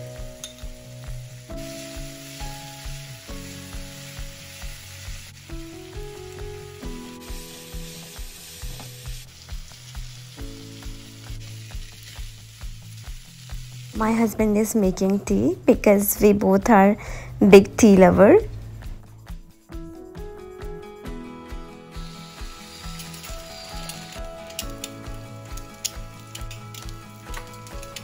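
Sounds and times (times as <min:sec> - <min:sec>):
background music with beat: 0:00.0 - 0:14.2, 0:18.3 - 0:28.0
rice sizzling in a pan: 0:00.0 - 0:14.3, 0:21.6 - 0:28.0.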